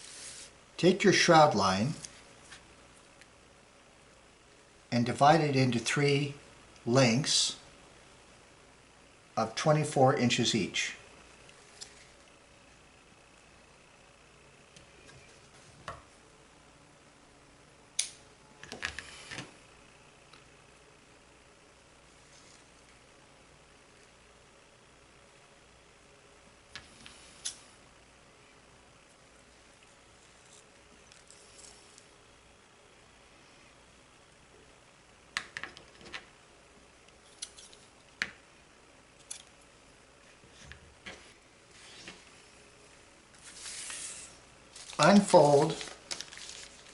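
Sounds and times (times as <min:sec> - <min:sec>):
rustling: 0:43.3 - 0:46.9.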